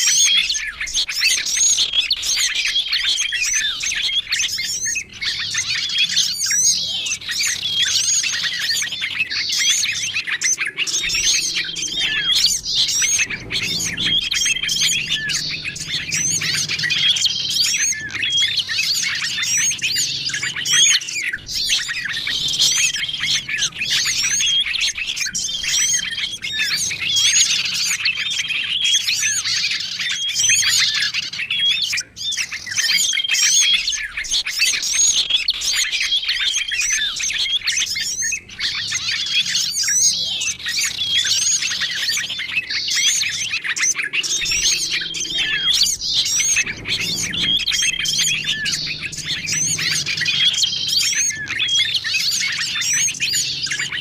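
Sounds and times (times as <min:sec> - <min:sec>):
songbirds chirping and trilling: 0:00.0 - 0:54.0.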